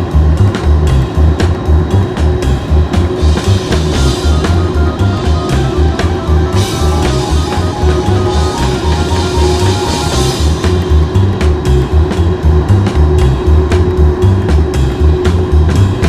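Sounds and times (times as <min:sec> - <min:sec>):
instrumental rock music: 0:01.8 - 0:13.8.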